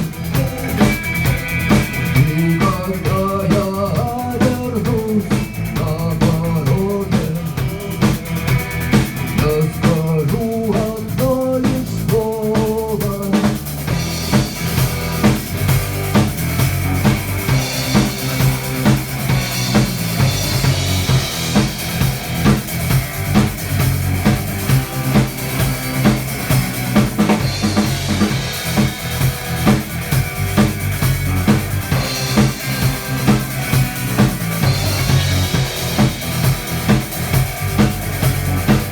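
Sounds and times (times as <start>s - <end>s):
band playing instrumental: 0.0s - 38.9s
bending lead melody: 13.8s - 38.9s.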